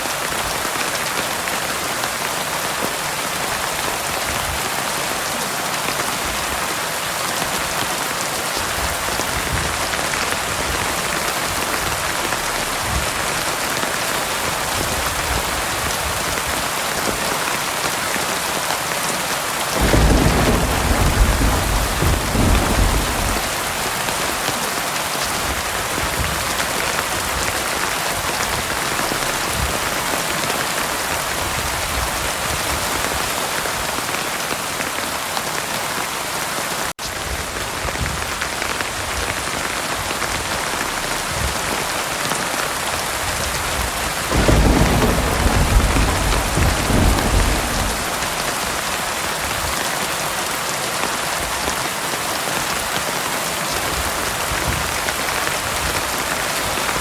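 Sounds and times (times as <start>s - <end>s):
heavy rain: 0.0s - 57.0s
thunder rumble: 19.8s - 24.6s, 43.7s - 49.7s.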